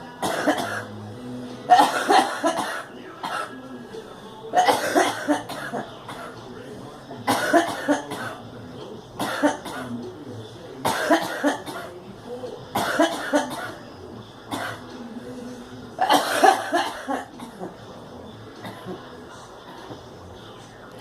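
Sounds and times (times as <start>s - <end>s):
woman coughing: 0.2s - 0.9s, 1.7s - 3.6s, 4.6s - 6.3s, 7.3s - 8.4s, 9.2s - 9.9s, 10.8s - 11.9s, 12.7s - 13.8s, 16.0s - 17.7s.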